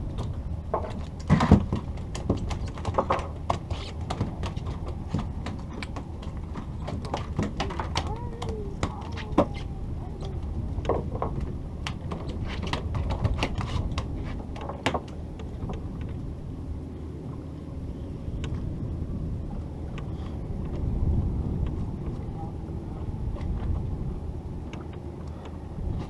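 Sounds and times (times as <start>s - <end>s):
boat engine rumbling: 0.0s - 26.0s
sharp clicks and knocks: 0.1s - 9.6s.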